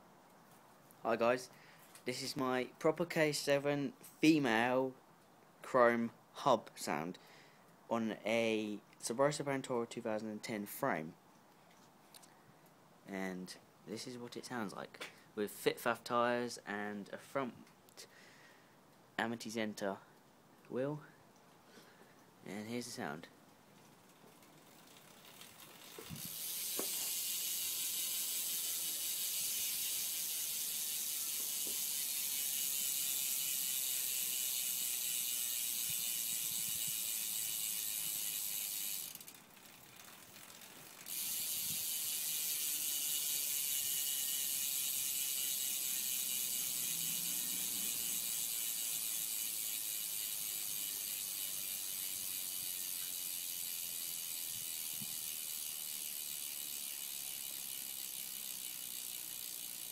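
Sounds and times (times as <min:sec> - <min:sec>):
bicycle hub freewheel buzzing: 0:23.9 - 0:59.9.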